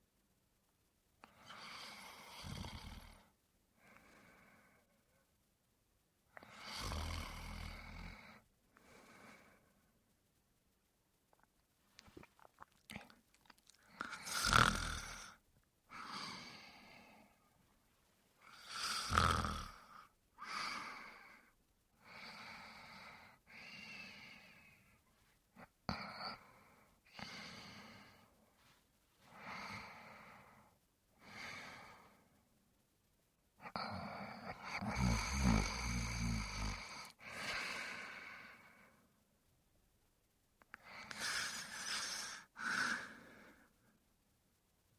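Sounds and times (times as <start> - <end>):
man snoring: 1.5 - 3.3, 6.4 - 8.2, 14.0 - 15.4, 18.5 - 19.9, 33.8 - 37.8.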